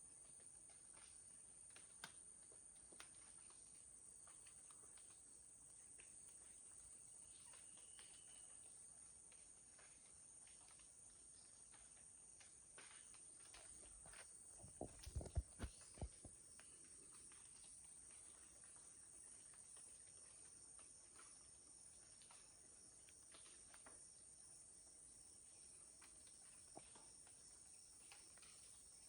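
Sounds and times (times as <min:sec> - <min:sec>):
soft low thumps: 0:13.9 - 0:16.3.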